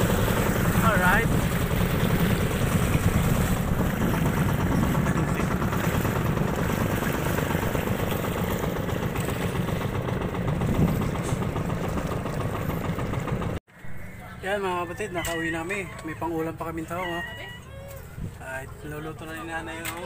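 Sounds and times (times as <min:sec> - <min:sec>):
small engine running steadily: 0:00.0 - 0:13.6.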